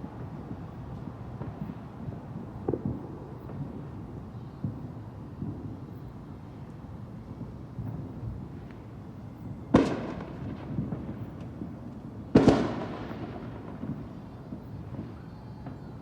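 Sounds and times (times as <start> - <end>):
faint firework pops: 0.9 - 6.1, 9.7 - 16.0
fireworks bangs: 1.4 - 4.0, 9.7 - 16.0.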